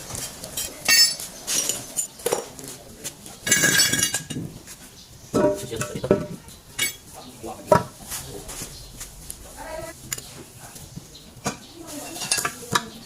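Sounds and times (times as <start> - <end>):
metal tools clanking: 0.2 - 2.5, 3.4 - 4.5, 5.3 - 8.0.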